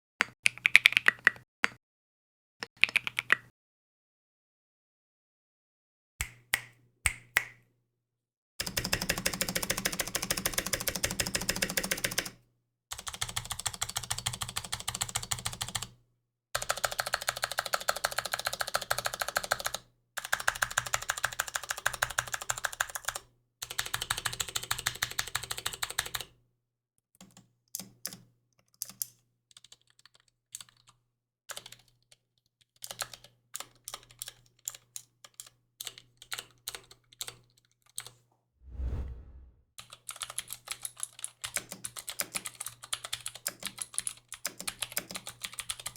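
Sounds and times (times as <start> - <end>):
clicky mechanical keyboard typing: 8.6 - 12.3, 12.9 - 15.9, 16.6 - 26.2, 40.2 - 45.9.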